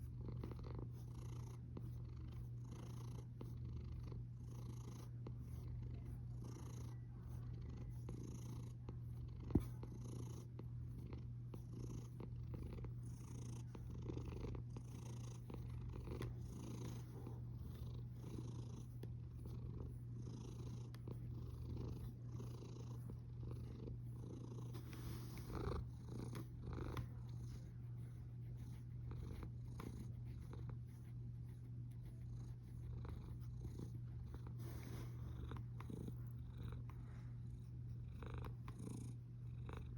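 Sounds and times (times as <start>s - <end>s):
cat snoring: 19.7s - 27.0s, 37.5s - 39.9s.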